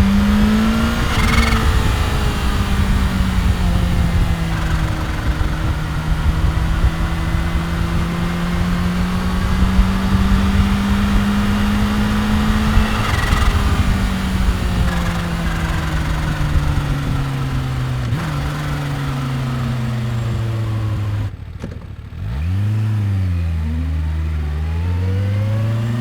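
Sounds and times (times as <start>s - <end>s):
motorcycle engine pulling: 0.0s - 26.0s.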